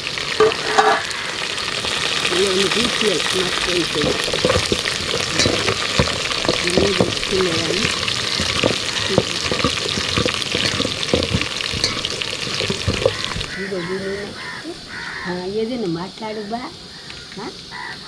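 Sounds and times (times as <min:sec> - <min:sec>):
food sizzling in a pan: 0:00.0 - 0:18.0
ladle knocking and scraping pan: 0:00.3 - 0:01.1, 0:01.8 - 0:13.7.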